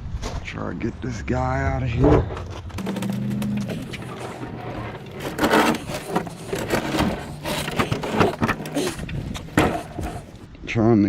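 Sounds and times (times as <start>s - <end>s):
refrigerator on hand truck rattling: 2.8s - 10.5s.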